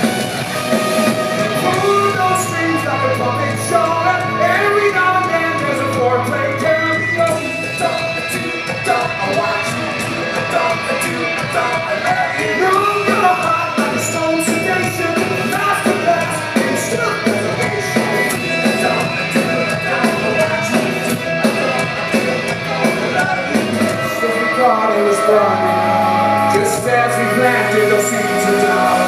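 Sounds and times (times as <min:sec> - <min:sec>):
live rock band playing: 0:00.0 - 0:29.0
steady drum beat: 0:00.0 - 0:29.0.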